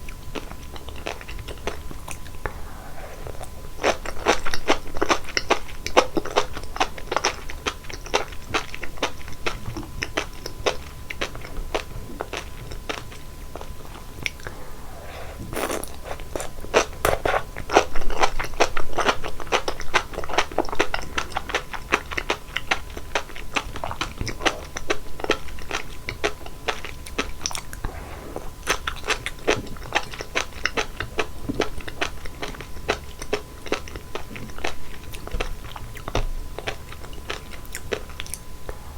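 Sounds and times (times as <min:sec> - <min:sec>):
wet chewing: 0:00.0 - 0:38.9
crisp popping and crunching: 0:15.4 - 0:21.1.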